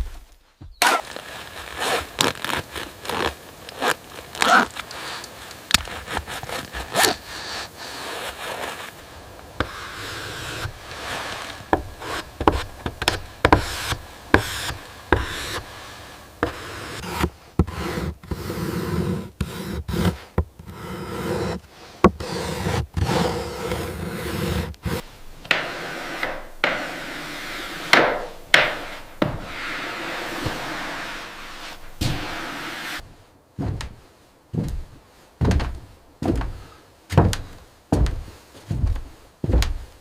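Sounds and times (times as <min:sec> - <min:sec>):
hand tool scraping wood: 0:00.7 - 0:34.0
sharp knocks on wood: 0:35.4 - 0:39.8.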